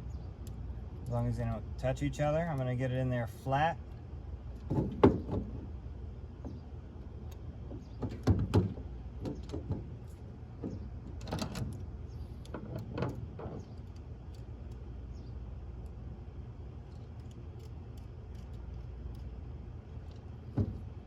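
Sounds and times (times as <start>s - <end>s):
steady low hum: 0.0s - 21.0s
knocks and clicks of grill parts: 4.6s - 5.7s, 6.4s - 14.8s, 20.0s - 21.0s.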